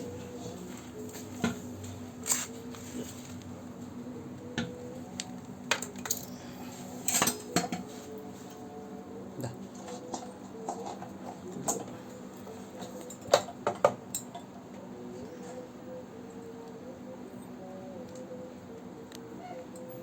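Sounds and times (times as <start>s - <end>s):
steady low hum: 0.0s - 20.0s
metal parts clinking and knocking: 5.7s - 6.4s.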